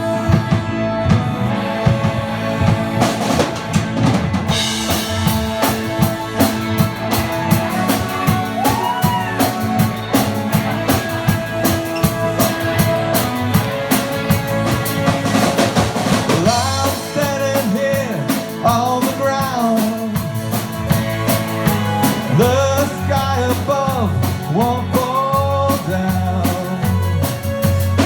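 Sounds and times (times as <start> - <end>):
bending lead guitar note: 0.0 - 19.4
drum kit playing a steady beat: 0.0 - 28.0
guitar and bass: 0.0 - 28.0.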